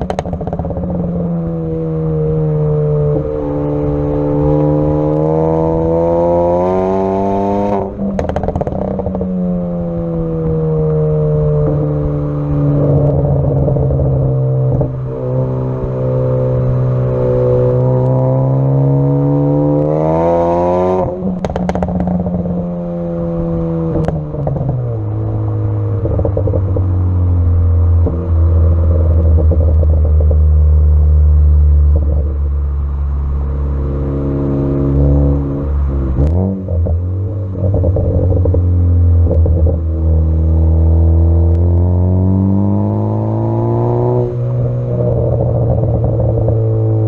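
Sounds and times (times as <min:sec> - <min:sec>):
exhaust pops and crackles: 0:00.0 - 0:01.1, 0:07.7 - 0:09.4, 0:21.0 - 0:22.6, 0:23.9 - 0:24.8, 0:26.0 - 0:27.0, 0:28.0 - 0:31.1, 0:31.8 - 0:32.5, 0:36.2 - 0:40.2, 0:44.9 - 0:47.0
car engine and exhaust: 0:00.0 - 0:47.0.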